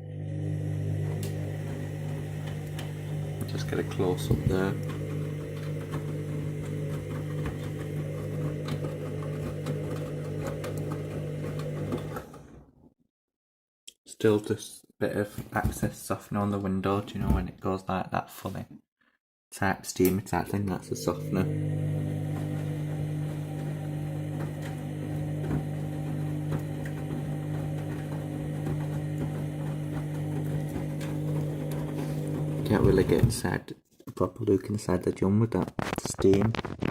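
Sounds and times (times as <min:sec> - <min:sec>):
washing machine motor hum: 0:00.0 - 0:12.7, 0:20.6 - 0:33.4.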